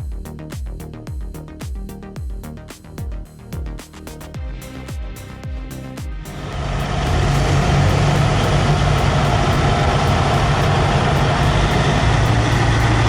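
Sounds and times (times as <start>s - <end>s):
truck engine running: 6.3s - 13.0s.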